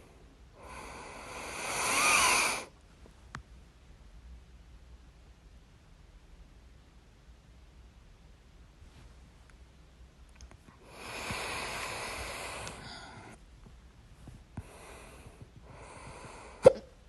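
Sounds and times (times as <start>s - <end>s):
person breathing audibly: 0.0s - 2.7s, 10.8s - 13.4s, 14.2s - 16.9s
loud hiccup: 16.6s - 16.9s.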